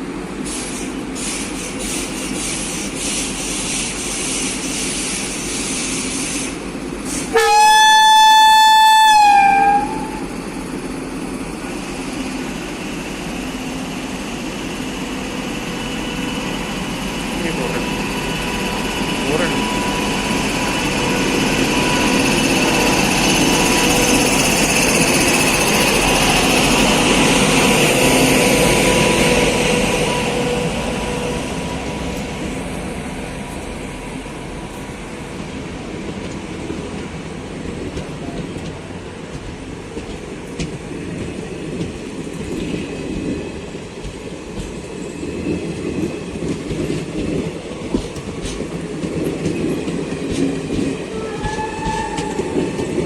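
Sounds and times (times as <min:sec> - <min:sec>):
locomotive running noise with whine: 0:00.0 - 0:53.0
rumble of train coaches: 0:00.0 - 0:53.0.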